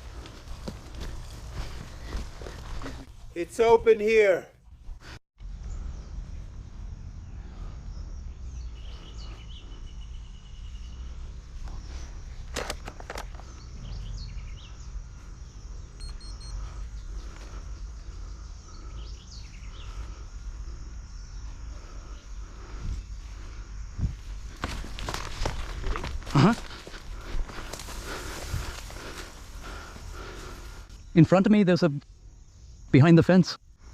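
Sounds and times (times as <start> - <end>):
birds chirping: 7.2 - 24.6, 25.5 - 33.7.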